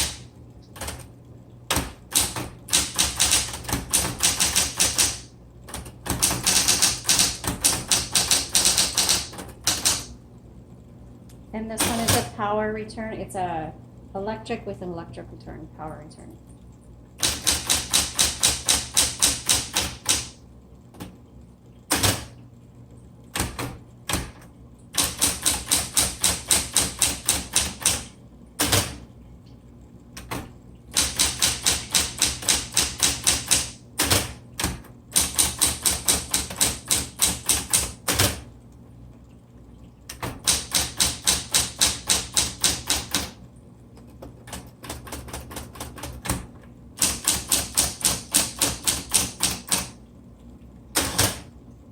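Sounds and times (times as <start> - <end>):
typewriter motor hum: 0.0 - 1.1, 1.7 - 10.2, 11.8 - 12.4, 17.2 - 20.4, 21.8 - 22.4, 23.3 - 29.1, 30.2 - 38.5, 40.1 - 43.4, 44.2 - 50.0, 50.9 - 51.5
typewriter key strikes: 1.7 - 5.2, 6.1 - 10.1, 17.2 - 20.4, 31.0 - 38.4, 40.1 - 43.3, 47.0 - 49.9, 51.0 - 51.4.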